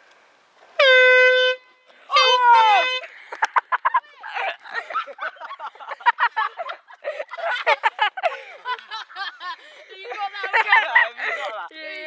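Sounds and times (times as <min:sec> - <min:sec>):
people laughing hard: 0:02.9 - 0:11.6.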